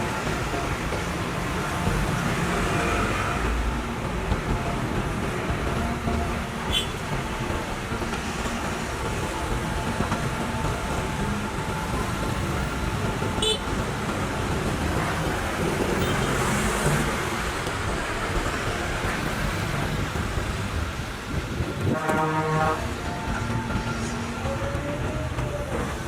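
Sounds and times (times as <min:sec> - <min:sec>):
excavator diesel engine running: 0:00.0 - 0:26.0.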